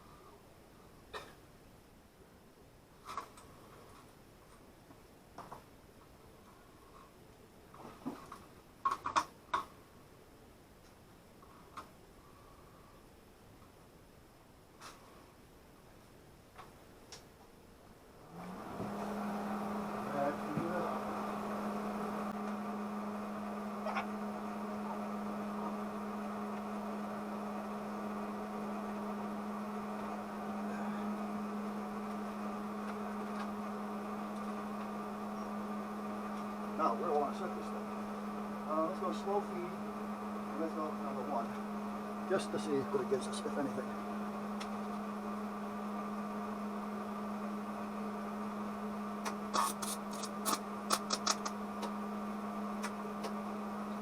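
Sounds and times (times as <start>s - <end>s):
electrical hum: 0.0s - 54.0s
welder arc crackling: 49.2s - 51.9s.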